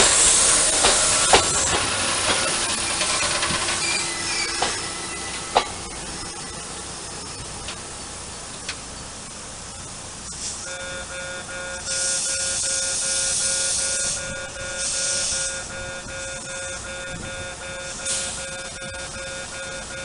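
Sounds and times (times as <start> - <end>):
bursts of hiss: 0.0 - 11.0, 11.8 - 15.8.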